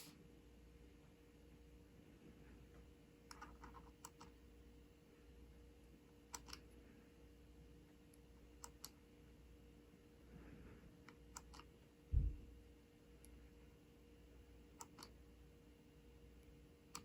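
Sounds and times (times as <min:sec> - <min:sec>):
small switch clicks: 0:06.3 - 0:06.7, 0:08.6 - 0:09.0, 0:11.1 - 0:11.7, 0:14.8 - 0:15.2.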